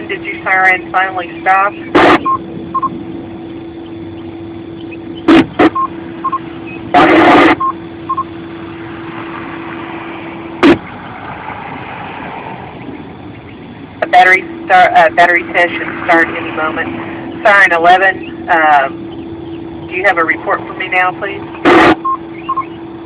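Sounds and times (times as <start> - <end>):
burst of static: 0.0 - 3.4, 4.9 - 7.8, 8.8 - 12.4, 14.0 - 19.1, 19.7 - 22.4
radio receiver hum: 0.0 - 23.0
radio squelch clicks: 3.8 - 5.9
faint short beeps: 5.3 - 8.3.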